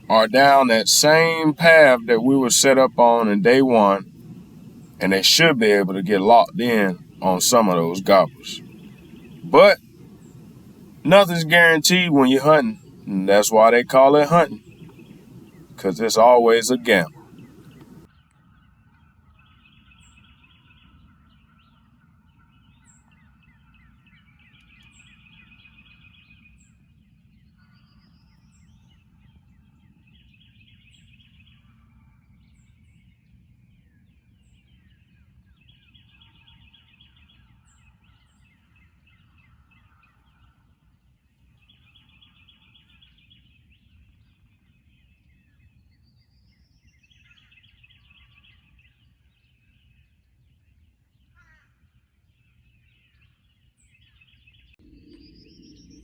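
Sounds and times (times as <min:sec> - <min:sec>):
low steady background rumble: 0:00.0 - 0:18.1
songbirds singing: 0:00.0 - 0:18.8, 0:19.4 - 0:56.0.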